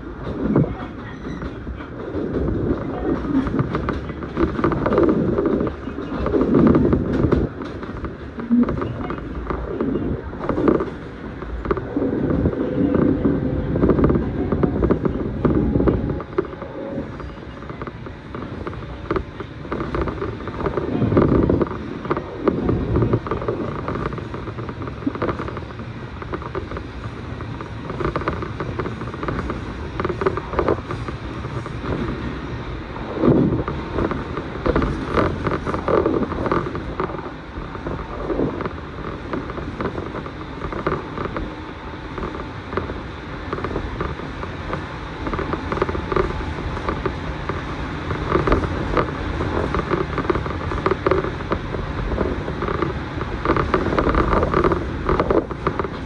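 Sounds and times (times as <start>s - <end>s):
train car rumble: 0.0s - 56.0s
knocks and creaks of car body: 0.2s - 32.3s, 33.1s - 56.0s.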